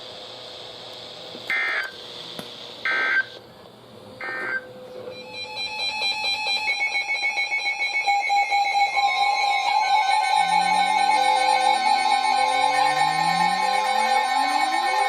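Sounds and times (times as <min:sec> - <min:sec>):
alert data tone bursts: 0:01.5 - 0:02.0, 0:02.8 - 0:03.4, 0:04.2 - 0:15.0
music: 0:05.2 - 0:15.0.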